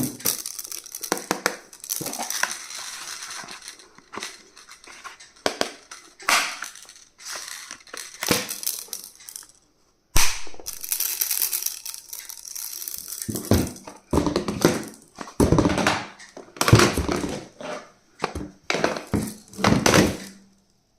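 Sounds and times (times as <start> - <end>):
scrapes and knocks: 16.6 - 20.4.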